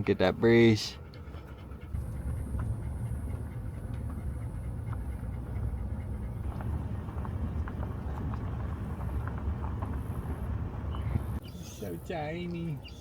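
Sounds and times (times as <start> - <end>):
road noise: 0.0 - 13.0
wind buffeting: 1.8 - 11.6.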